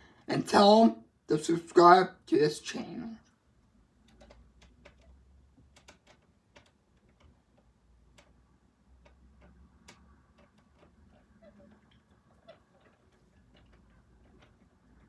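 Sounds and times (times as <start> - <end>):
faint small clicks and taps: 4.0 - 15.0.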